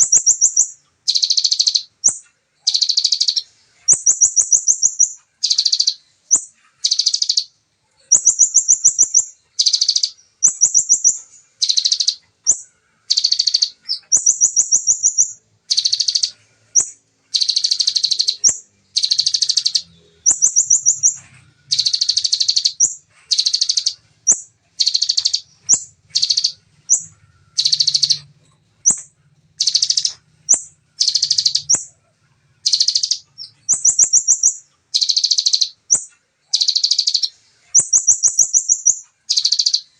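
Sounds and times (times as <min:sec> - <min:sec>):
bird song trills: 0:00.0 - 0:39.9
bird chips: 0:08.1 - 0:32.0, 0:32.6 - 0:39.9.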